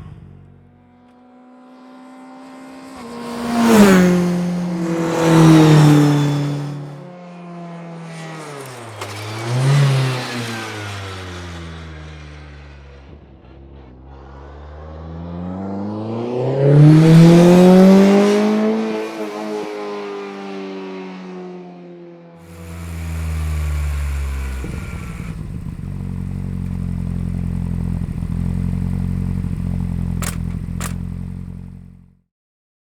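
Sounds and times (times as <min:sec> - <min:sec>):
steady low engine note: 0:00.0 - 0:00.9, 0:22.5 - 0:32.2
car engine revving: 0:00.0 - 0:07.0, 0:08.2 - 0:19.0, 0:22.4 - 0:32.1.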